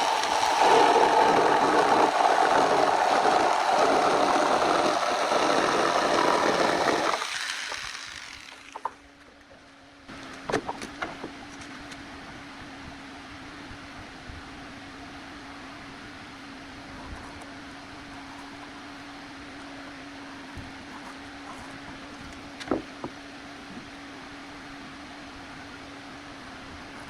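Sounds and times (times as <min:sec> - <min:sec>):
jigsaw cutting wood: 0:00.0 - 0:09.0.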